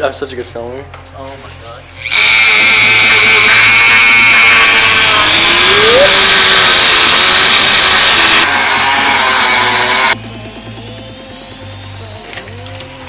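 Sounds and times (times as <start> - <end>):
rotary tool grinding steel: 2.0 - 10.2.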